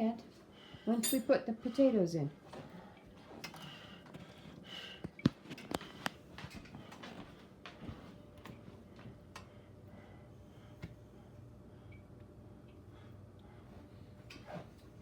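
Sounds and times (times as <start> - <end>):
kitchen utensils and dishes clinking: 1.0 - 1.4.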